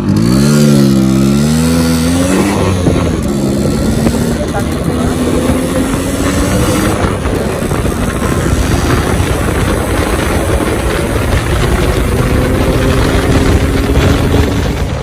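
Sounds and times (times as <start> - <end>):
two-stroke motorcycle engine buzzing: 0.0 - 15.0.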